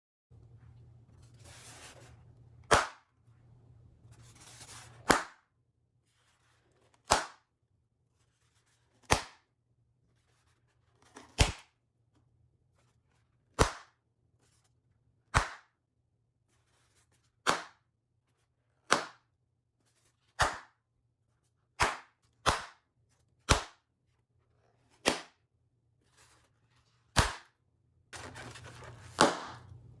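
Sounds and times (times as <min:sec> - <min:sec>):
rustling: 0:28.2 - 0:29.8
balloons popping: 0:29.1 - 0:29.7.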